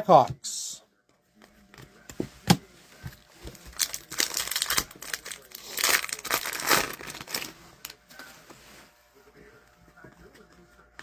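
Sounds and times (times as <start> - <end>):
plastic wrapper crumpling and tearing: 3.5 - 8.0.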